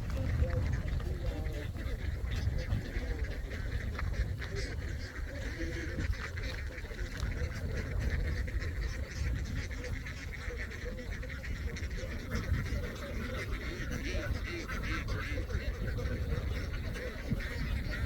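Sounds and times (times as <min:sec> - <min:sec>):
steady low rumble: 0:00.0 - 0:09.9
flock of ducks quacking: 0:00.0 - 0:18.0.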